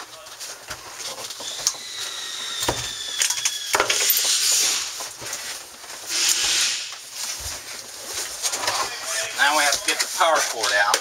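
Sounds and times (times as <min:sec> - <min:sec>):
air conditioner housing scraping: 0:00.4 - 0:11.0
thin high whine: 0:06.1 - 0:07.0.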